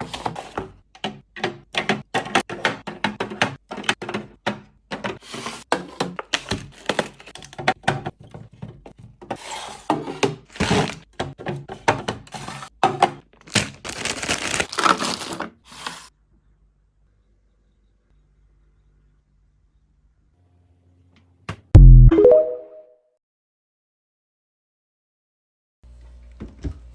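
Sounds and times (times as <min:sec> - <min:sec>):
food packaging clicks and rustling: 0:05.9 - 0:08.7, 0:12.4 - 0:15.6.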